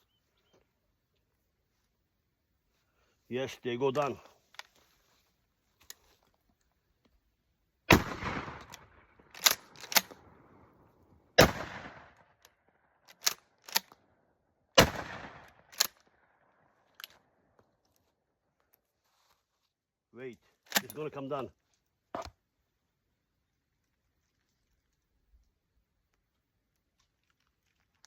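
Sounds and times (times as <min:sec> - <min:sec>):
shotgun shots echoing: 0:07.9 - 0:10.3, 0:11.4 - 0:12.2, 0:14.8 - 0:15.8
shotgun slide racking clacks: 0:09.4 - 0:10.2, 0:13.1 - 0:14.0, 0:15.8 - 0:16.0, 0:20.7 - 0:21.0.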